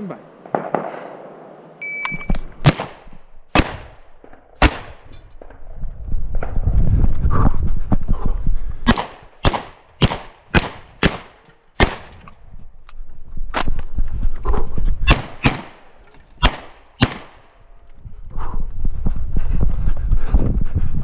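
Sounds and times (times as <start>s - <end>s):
shotgun shots with echo: 2.6s - 5.3s, 8.9s - 12.4s, 15.1s - 17.6s.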